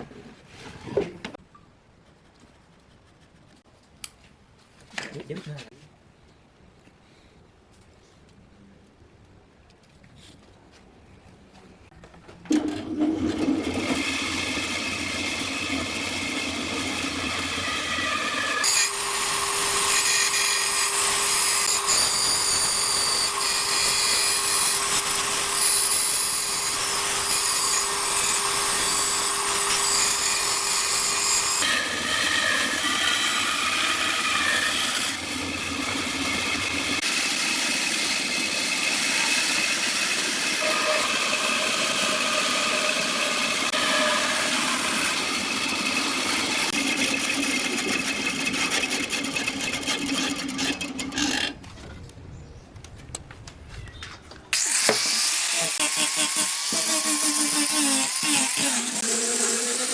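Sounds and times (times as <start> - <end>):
power tools cutting wood: 12.8 - 51.6, 54.5 - 59.9.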